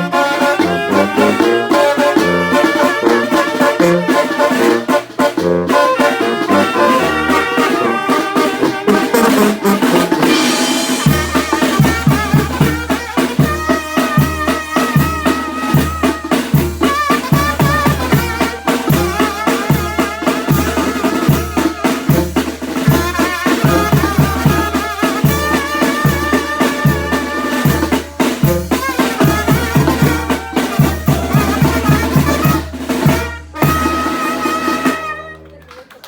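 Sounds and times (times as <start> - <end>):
wind instruments sustained melody: 0.0 - 16.2
bass drum and snare beat: 0.0 - 35.4.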